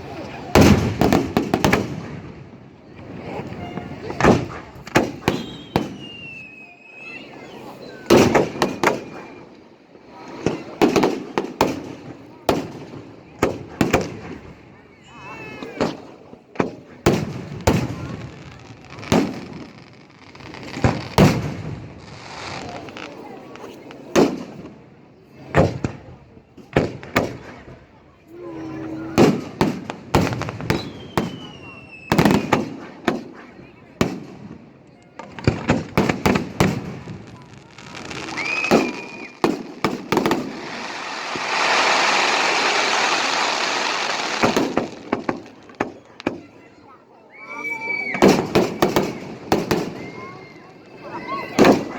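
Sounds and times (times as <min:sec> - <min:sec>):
fireworks bangs with echoing rumble: 0:00.2 - 0:06.5, 0:08.0 - 0:09.5, 0:10.2 - 0:14.8, 0:15.6 - 0:28.0, 0:29.0 - 0:46.8, 0:48.1 - 0:51.9
firework whistle: 0:05.1 - 0:09.6, 0:30.6 - 0:32.8, 0:38.0 - 0:44.8
firework hissing crackle: 0:17.1 - 0:24.4, 0:35.3 - 0:46.4.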